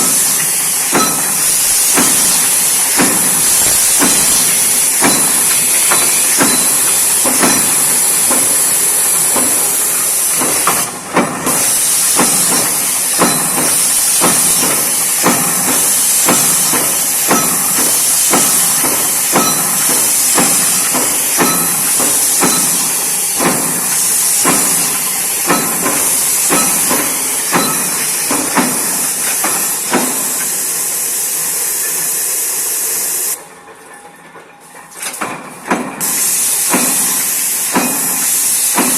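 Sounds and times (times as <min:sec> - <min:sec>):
punch press strokes: 0:00.0 - 0:30.8
steady loud hiss: 0:00.0 - 0:33.5, 0:36.0 - 0:38.9.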